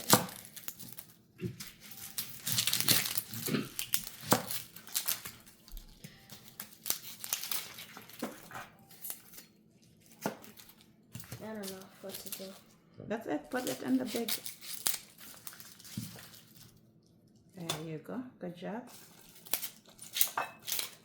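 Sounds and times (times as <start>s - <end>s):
cabbage leaves crunching: 0.0s - 12.7s, 13.5s - 16.8s.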